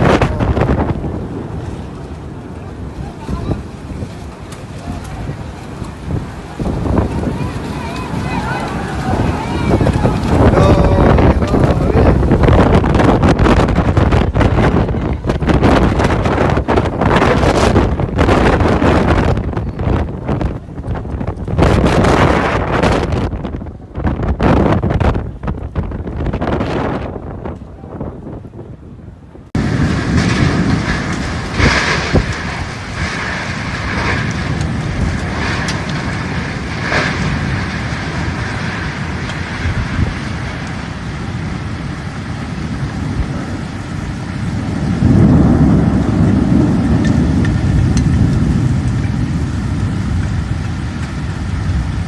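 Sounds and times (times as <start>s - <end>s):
gusting wind: 0.0s - 52.0s
heavy rain: 0.0s - 52.0s
low rumble: 0.0s - 52.0s.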